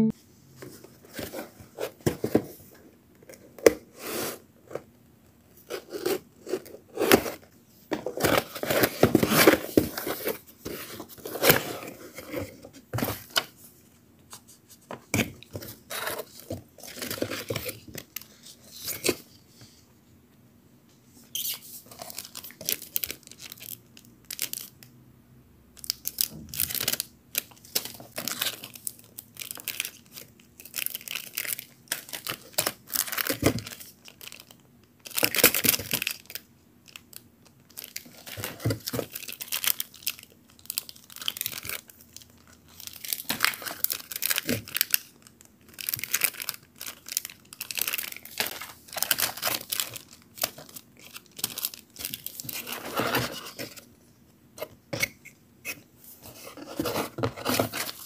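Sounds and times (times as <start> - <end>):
packaging tearing and rustling: 8.0 - 12.4, 25.8 - 53.8.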